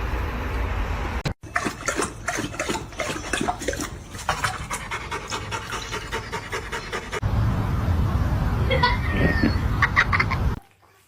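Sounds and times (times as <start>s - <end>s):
dog panting: 2.3s - 7.2s
low rumbling noise: 7.2s - 10.6s.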